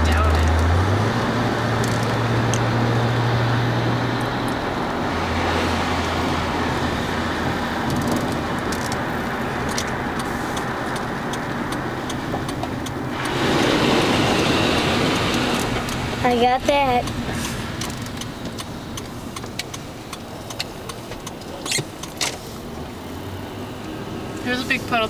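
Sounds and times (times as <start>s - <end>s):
low engine hum: 0.0s - 25.0s
tyre hiss on wet road: 10.2s - 10.6s, 13.1s - 16.2s, 17.3s - 17.8s, 22.3s - 22.9s.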